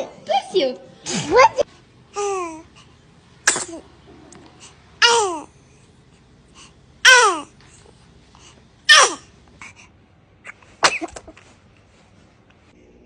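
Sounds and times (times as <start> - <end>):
baby sneezing: 3.4 - 3.9, 8.9 - 9.3, 10.4 - 11.5.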